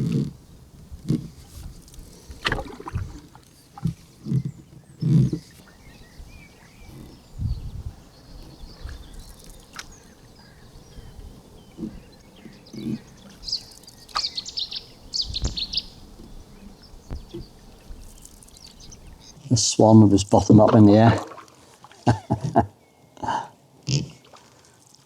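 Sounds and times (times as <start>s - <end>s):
canoe paddling thumps: 0.0s - 22.7s
birds singing and chirping: 3.0s - 21.1s.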